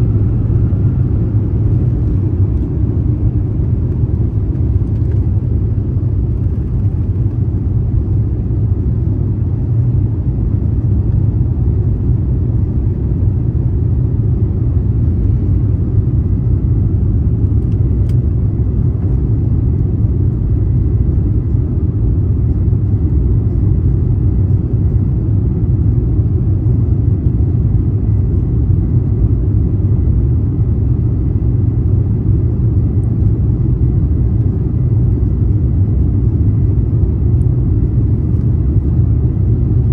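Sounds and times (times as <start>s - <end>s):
airplane cabin engine rumble: 0.0s - 39.9s.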